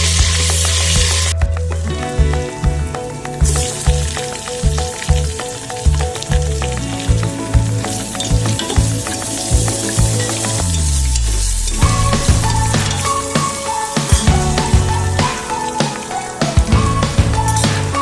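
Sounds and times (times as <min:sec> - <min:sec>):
food sizzling in hot oil: 0:00.0 - 0:01.3, 0:03.4 - 0:14.5
background music with steady beat: 0:00.0 - 0:18.0.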